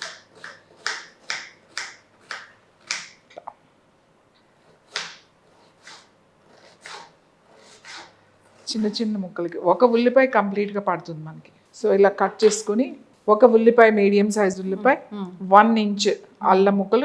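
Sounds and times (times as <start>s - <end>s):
knife chopping onion: 0.0s - 3.2s, 4.6s - 8.1s.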